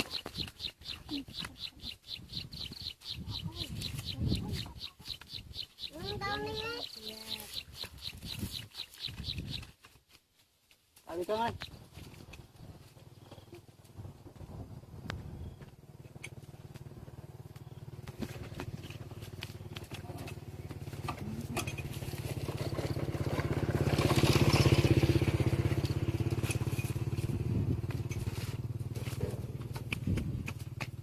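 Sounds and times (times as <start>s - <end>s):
small engine passing by: 11.6s - 31.0s.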